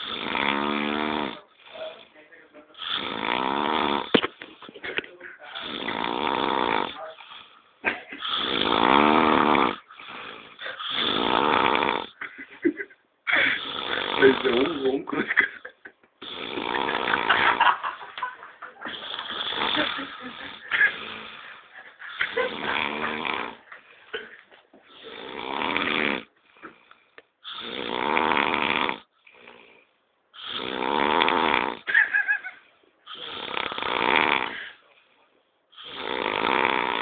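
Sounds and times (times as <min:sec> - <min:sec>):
person snoring: 0:00.0 - 0:02.1, 0:02.7 - 0:04.2, 0:05.4 - 0:12.2, 0:13.4 - 0:15.3, 0:16.2 - 0:17.6, 0:18.8 - 0:23.6, 0:24.9 - 0:31.9, 0:33.1 - 0:34.8, 0:35.7 - 0:37.0
quiet breaths: 0:00.0 - 0:08.8, 0:09.7 - 0:12.7, 0:13.3 - 0:16.7, 0:17.7 - 0:28.2, 0:28.8 - 0:31.3, 0:32.5 - 0:37.0.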